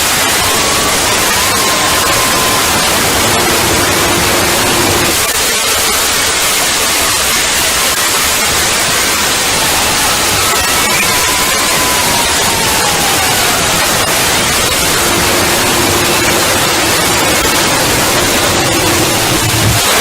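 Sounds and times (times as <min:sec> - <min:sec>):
high tone sliding lower: 0:00.0 - 0:05.2, 0:09.6 - 0:20.0
harsh static: 0:00.0 - 0:20.0.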